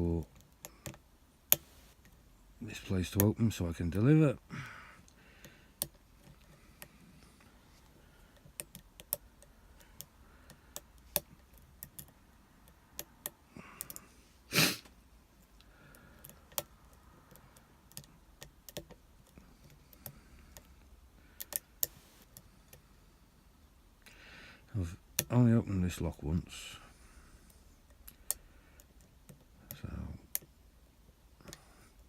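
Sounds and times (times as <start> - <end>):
lock pick clicks and taps: 0.3 - 2.2, 5.8 - 6.9, 8.3 - 14.0, 16.2 - 20.7, 21.4 - 21.9, 27.9 - 30.5.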